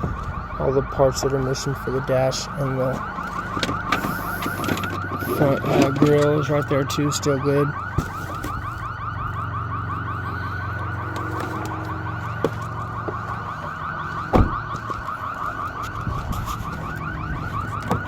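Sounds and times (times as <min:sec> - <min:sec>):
electronic alarm warbling: 0:00.0 - 0:18.0
thump: 0:14.3 - 0:14.6.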